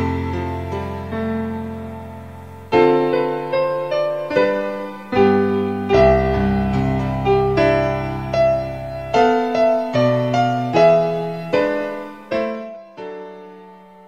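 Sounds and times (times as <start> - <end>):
slow piano chords: 0.0 - 14.0.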